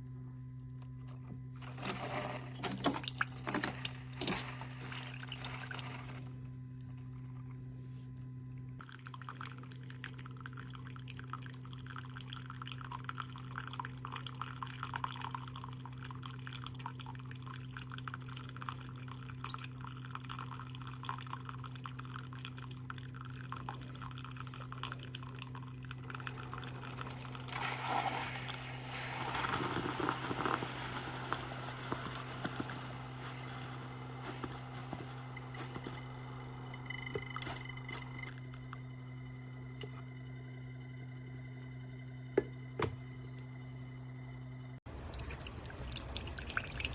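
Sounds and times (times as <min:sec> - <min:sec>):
coffee maker humming: 0:00.0 - 0:46.9
coffee dripping into cup: 0:08.8 - 0:40.4, 0:44.9 - 0:46.9.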